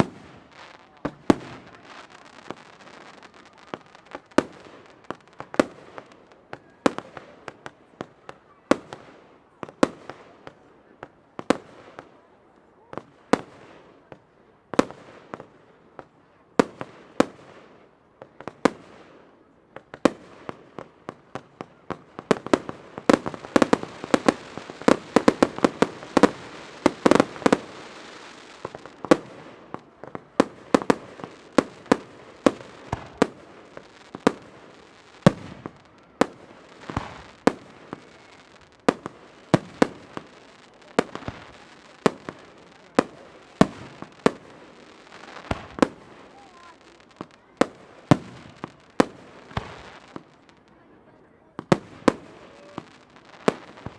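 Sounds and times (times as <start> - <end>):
fireworks bursting with bangs: 0.0 - 50.9, 51.5 - 53.9
fireworks crackling: 0.0 - 53.9.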